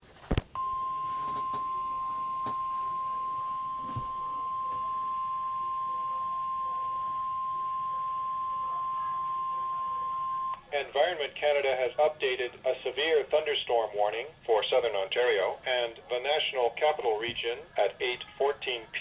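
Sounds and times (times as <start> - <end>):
steady alarm beep: 0.6 - 10.6.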